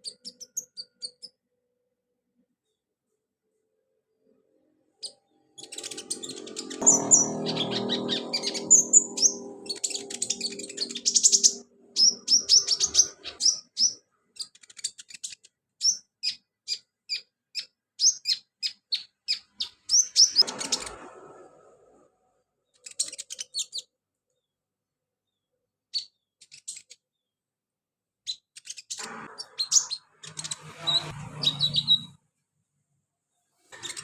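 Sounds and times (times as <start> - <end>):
bird chirping: 0.0 - 1.5, 5.0 - 22.0, 22.6 - 24.6, 25.2 - 27.4, 28.2 - 32.2, 33.7 - 34.0.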